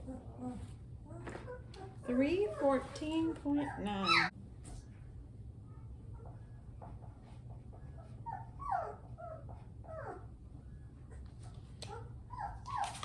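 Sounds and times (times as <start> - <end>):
puppy whimpering: 0.0 - 4.3, 8.0 - 10.3, 11.9 - 13.0.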